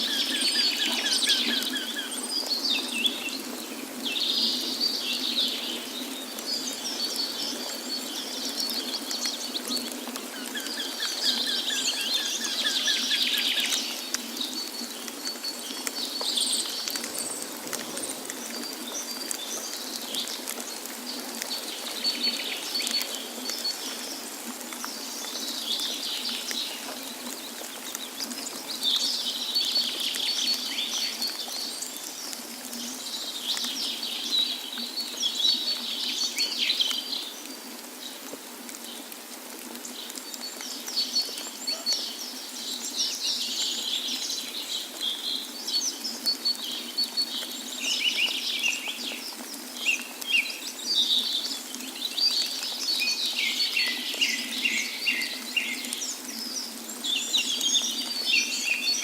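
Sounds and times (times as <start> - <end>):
songbirds chirping and trilling: 0.0 - 37.7
rushing water: 0.0 - 59.0.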